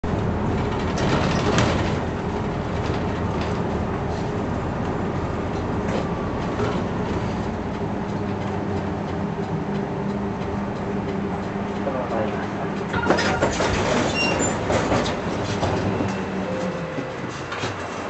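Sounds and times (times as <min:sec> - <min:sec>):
bus body rattling: 0:00.0 - 0:18.0
bus engine hum: 0:00.0 - 0:18.0
road rumble: 0:00.0 - 0:18.0
clatter: 0:00.5 - 0:03.7.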